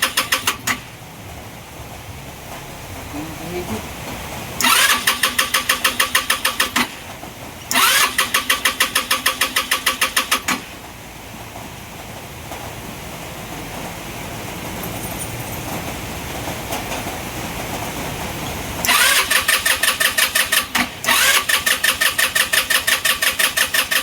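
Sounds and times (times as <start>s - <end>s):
motorcycle starter cranking: 0.0s - 1.0s, 4.6s - 7.1s, 7.7s - 10.8s, 18.8s - 24.0s.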